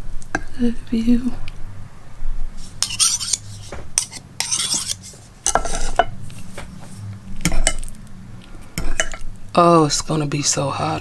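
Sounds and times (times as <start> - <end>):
cutlery scraping a plate: 2.7 - 8.0, 8.8 - 9.3.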